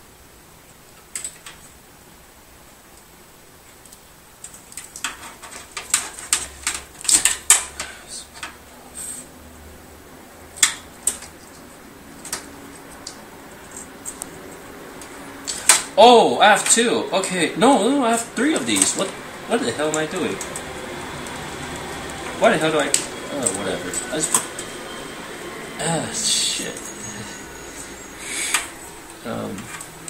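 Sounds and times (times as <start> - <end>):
small hard parts clicking and rattling: 3.8 - 8.7.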